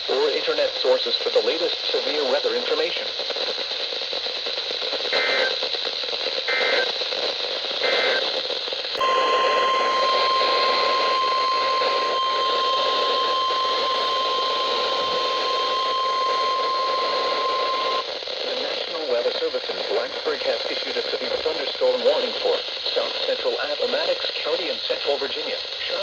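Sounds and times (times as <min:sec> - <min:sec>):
radio static: 0:00.1 - 0:26.0
steady warning alarm tone: 0:09.0 - 0:18.0.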